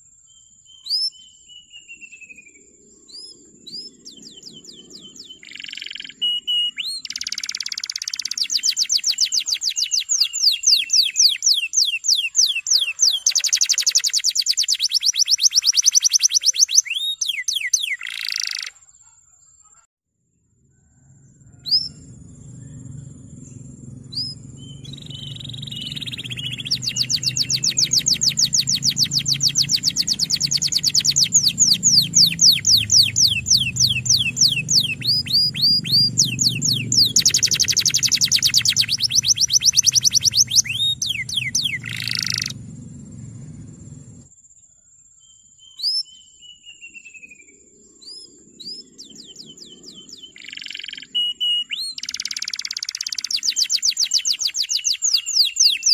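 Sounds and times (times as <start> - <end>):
canary singing trills: 0.0 - 19.8, 21.0 - 44.3, 45.2 - 55.9
low hum: 20.5 - 44.3.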